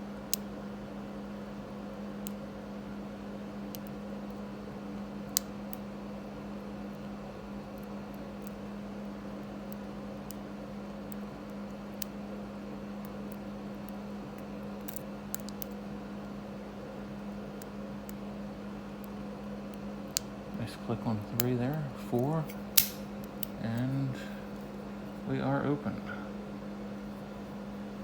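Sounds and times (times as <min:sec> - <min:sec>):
steady low hum: 0:00.0 - 0:28.0
lock pick clicking in padlock: 0:22.8 - 0:23.0.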